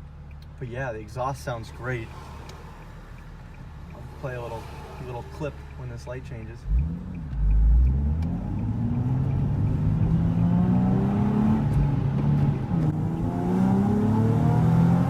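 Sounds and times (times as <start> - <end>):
car engine accelerating: 6.6 - 15.0.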